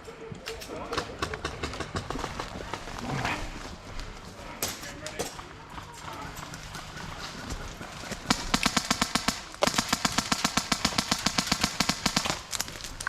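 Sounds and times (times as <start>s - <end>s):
airsoft gun firing full auto: 8.3s - 12.9s.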